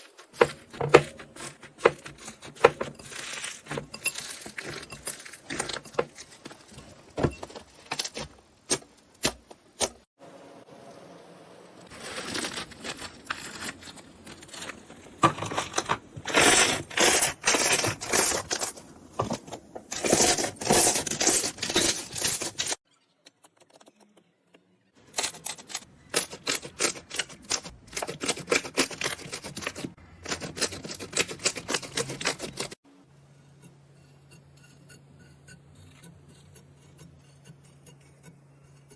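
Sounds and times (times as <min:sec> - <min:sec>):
blade crunching dry soap: 0:00.0 - 0:10.1, 0:11.9 - 0:22.8, 0:25.1 - 0:32.8.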